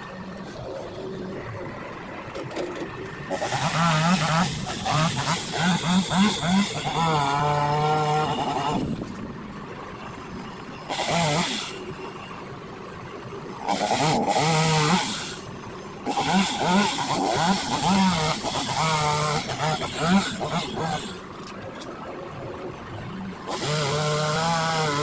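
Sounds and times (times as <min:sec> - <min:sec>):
chainsaw revving: 0:03.3 - 0:09.0, 0:10.9 - 0:11.8, 0:13.6 - 0:21.3, 0:23.4 - 0:25.0.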